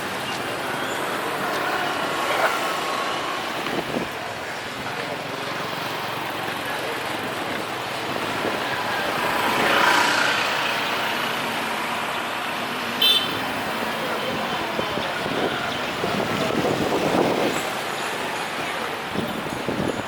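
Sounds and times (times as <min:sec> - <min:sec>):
busy street traffic: 0:00.0 - 0:20.0
vehicle passing close by: 0:09.1 - 0:11.9.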